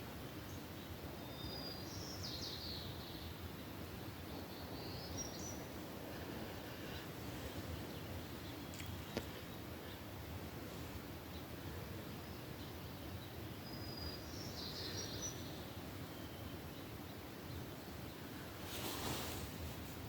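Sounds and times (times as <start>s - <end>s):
distant birdsong chirps: 0.0s - 20.0s
brief rustle: 18.6s - 20.0s.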